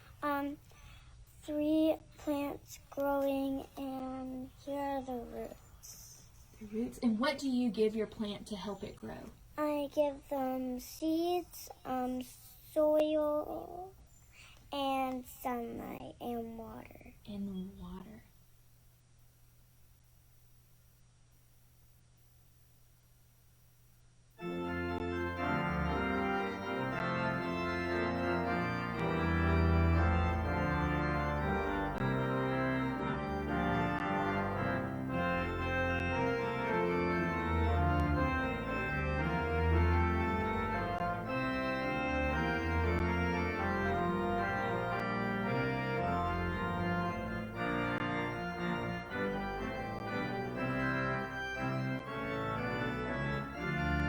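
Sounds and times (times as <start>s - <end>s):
organ playing chords: 24.4s - 54.0s.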